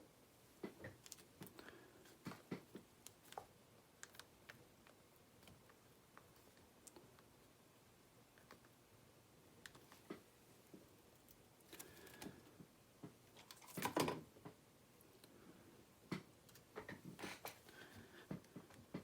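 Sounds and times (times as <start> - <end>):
faint clicks and taps: 16.1 - 19.0.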